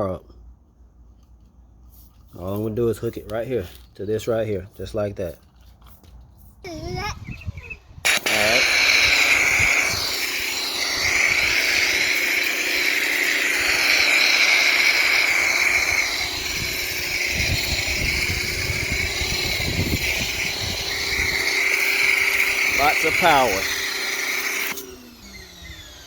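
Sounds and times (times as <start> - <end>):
pressure washer spraying: 8.1 - 25.2.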